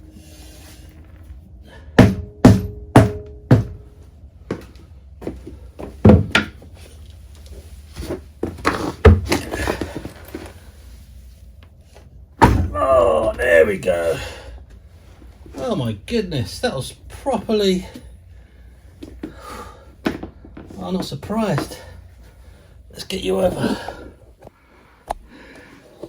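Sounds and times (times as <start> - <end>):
heavy knocks on metal wheel: 2.0 - 4.6, 5.8 - 6.6, 8.4 - 10.0, 12.4 - 12.8.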